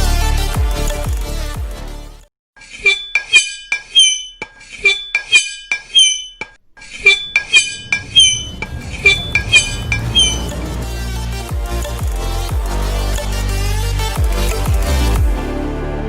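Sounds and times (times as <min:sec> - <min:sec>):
cutlery squeaking against glass: 0:02.6 - 0:10.6.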